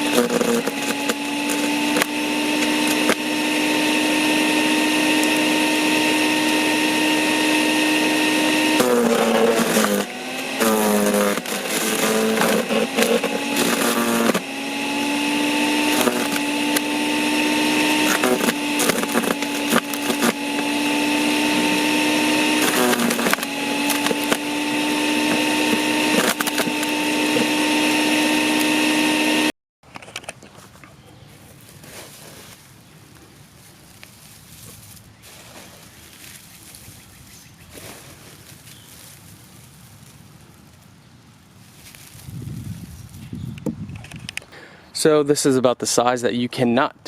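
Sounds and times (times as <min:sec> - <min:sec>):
blades cracking wood: 0:00.0 - 0:29.4
chipper motor hum: 0:00.0 - 0:29.6.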